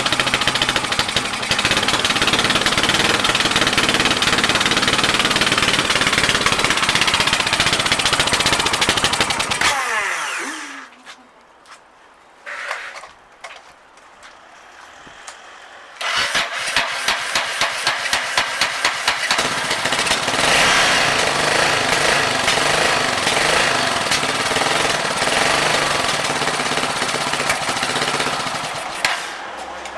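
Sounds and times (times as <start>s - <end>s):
motorcycle engine idling: 0.0s - 9.6s, 18.3s - 29.1s
electric starter cranking engine: 0.0s - 10.9s, 16.0s - 29.5s.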